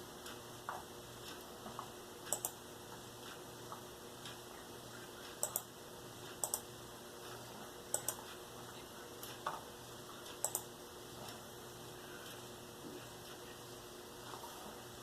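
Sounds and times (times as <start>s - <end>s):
faint steady hum: 0.0s - 15.0s
sharp little clicks: 2.3s - 2.6s, 5.4s - 5.7s, 6.3s - 6.7s, 7.9s - 8.3s, 10.3s - 10.7s.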